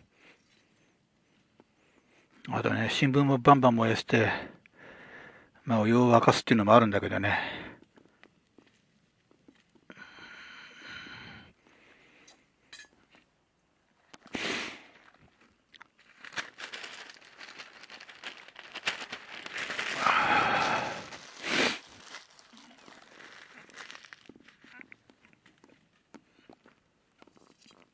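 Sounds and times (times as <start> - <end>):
newspaper being crumpled: 14.2 - 25.8.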